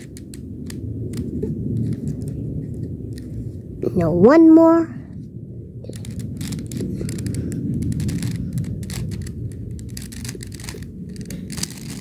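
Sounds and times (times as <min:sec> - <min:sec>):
puzzle cube clicking: 0:00.0 - 0:02.4, 0:05.9 - 0:12.0.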